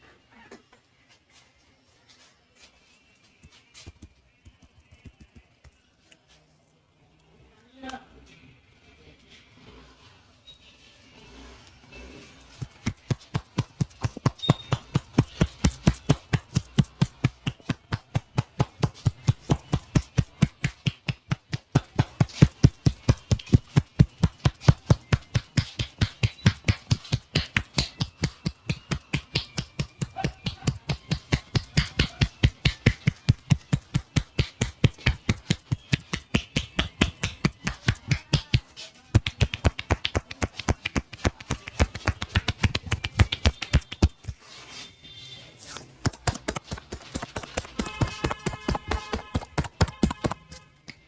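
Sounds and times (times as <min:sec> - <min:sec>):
hands slapping and tapping on body: 0:03.3 - 0:06.2, 0:12.6 - 0:44.4, 0:45.8 - 0:51.0.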